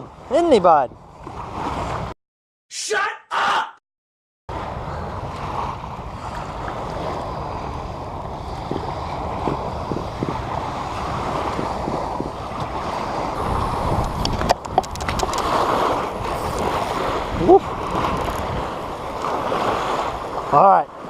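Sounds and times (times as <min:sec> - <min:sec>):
waves washing: 0:04.5 - 0:21.0
wind buffeting microphone: 0:04.5 - 0:21.0
sharp clicks: 0:14.2 - 0:15.5.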